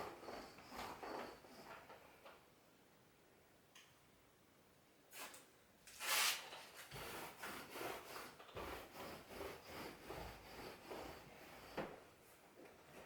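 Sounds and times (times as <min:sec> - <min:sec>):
rubbing and scraping: 0:05.9 - 0:12.0.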